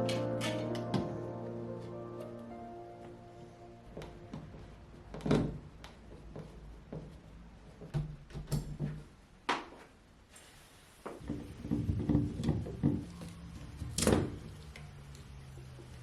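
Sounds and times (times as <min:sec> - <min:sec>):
objects knocking and thudding: 0:11.2 - 0:14.5.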